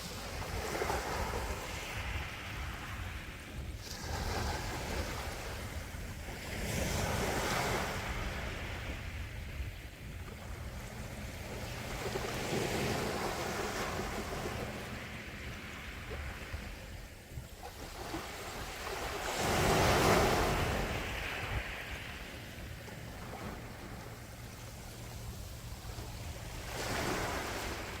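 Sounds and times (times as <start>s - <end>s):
sea waves washing on shore: 0.0s - 28.0s.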